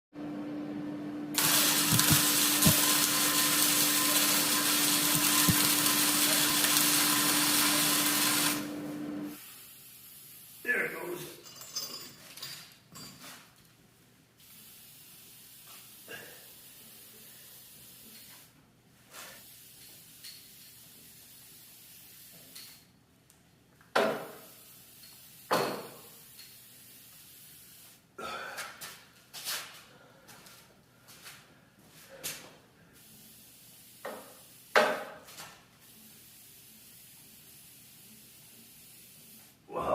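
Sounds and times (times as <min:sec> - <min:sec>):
power tool running: 0:01.3 - 0:09.4.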